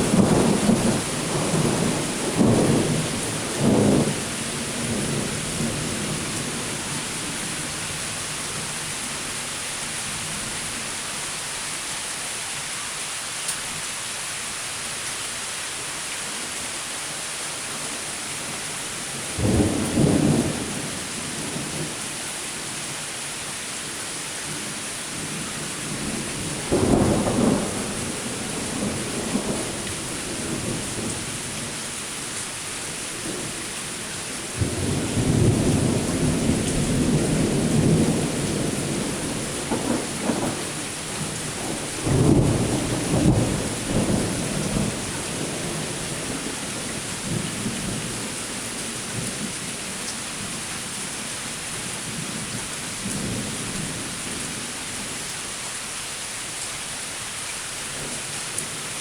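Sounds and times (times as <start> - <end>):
rolling thunder: 0.0 - 7.6, 19.3 - 22.0, 24.5 - 31.7, 34.5 - 49.5
rain hissing: 0.0 - 59.0.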